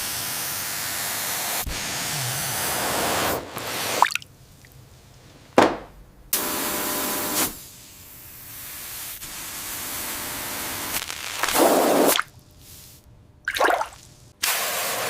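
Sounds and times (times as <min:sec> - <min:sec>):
spraying hiss: 0:00.0 - 0:04.1, 0:14.4 - 0:15.0.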